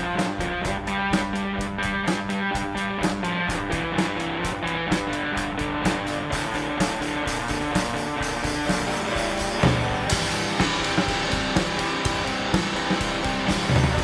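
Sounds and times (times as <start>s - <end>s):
drum kit beat: 0.0s - 14.0s
electric guitar playing: 0.0s - 14.0s.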